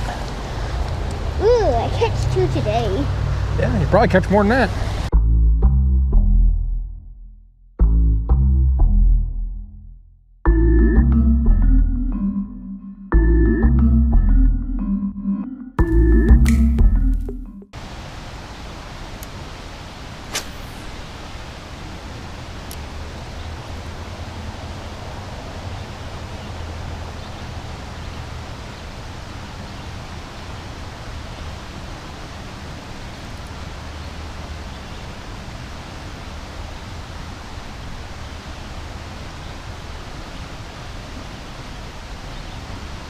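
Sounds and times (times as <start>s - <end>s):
rushing hiss: 17.8s - 22.2s.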